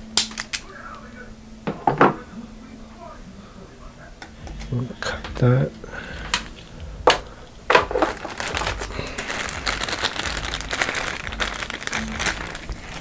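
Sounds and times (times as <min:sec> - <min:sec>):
plastic tubing crinkling and rustling: 0:00.0 - 0:01.2, 0:04.3 - 0:13.0.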